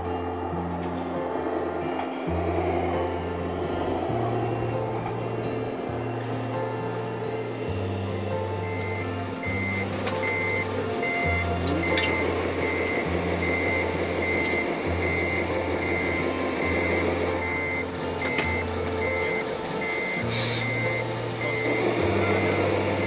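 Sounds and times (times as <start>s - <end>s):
low engine drone: 0.0s - 23.0s
reversing beeper: 0.2s - 23.0s
short hiss: 20.3s - 20.7s.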